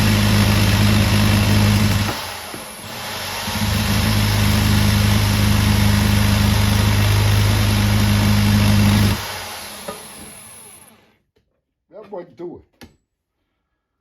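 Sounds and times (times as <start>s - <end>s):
power drill grinding plastic: 0.0s - 11.2s.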